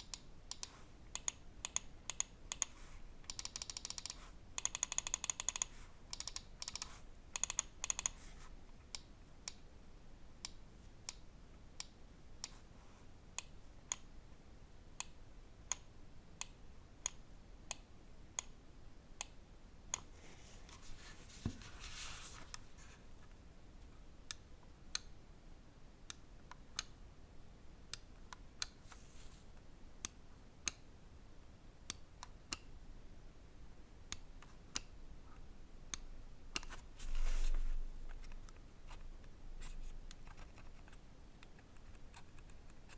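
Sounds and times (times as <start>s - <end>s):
rapid mouse ticking: 0.0s - 2.7s, 3.3s - 8.2s.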